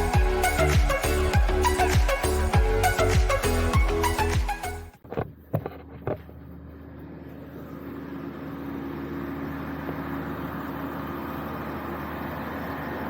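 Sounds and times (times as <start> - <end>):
music: 0.0 - 5.0
motor-like drone: 6.2 - 13.0.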